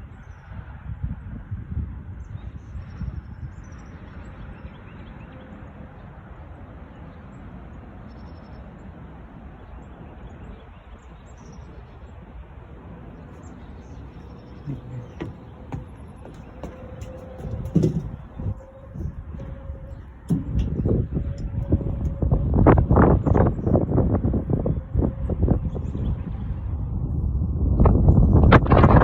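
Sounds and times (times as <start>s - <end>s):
wind buffeting microphone: 0.0s - 3.8s, 12.4s - 29.0s.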